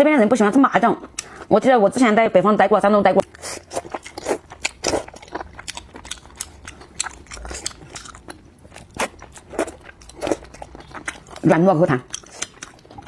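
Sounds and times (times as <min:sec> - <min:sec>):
wet chewing and biting: 0:03.2 - 0:13.0.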